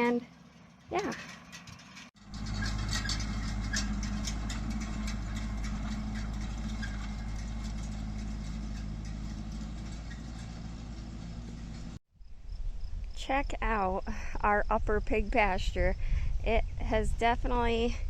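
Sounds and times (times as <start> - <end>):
tractor engine running: 0.0 - 12.0
light clatter of clicks: 1.0 - 11.9.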